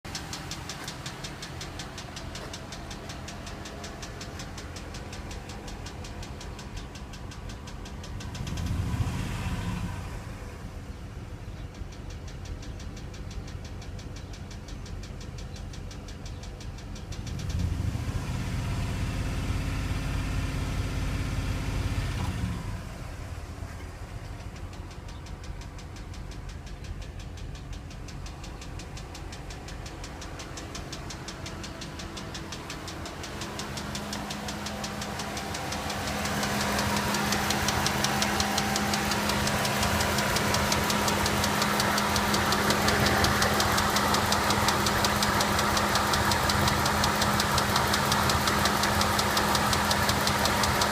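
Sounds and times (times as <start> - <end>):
engine revving: 0.0 - 10.9, 17.2 - 23.5, 28.2 - 50.9
engine ticking: 0.0 - 50.9.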